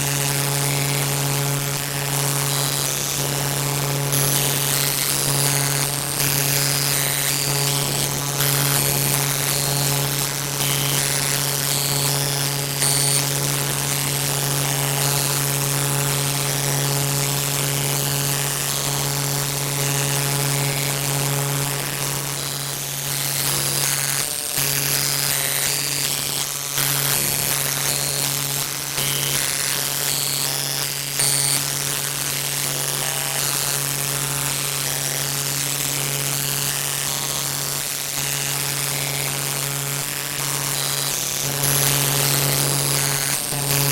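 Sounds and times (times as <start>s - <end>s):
loud buzzing drone: 0.0s - 43.9s.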